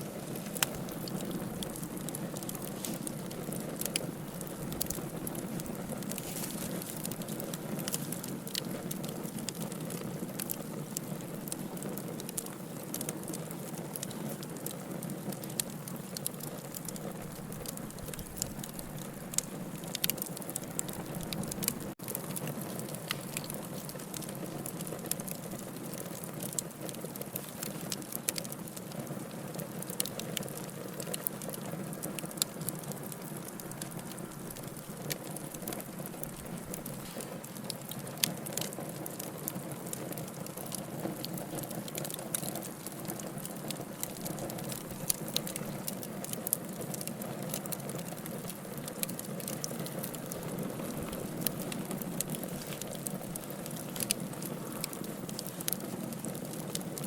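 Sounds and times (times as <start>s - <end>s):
low rush of flame: 0.0s - 13.3s
fire pops: 0.0s - 57.0s
wood fire crackling: 0.0s - 57.0s.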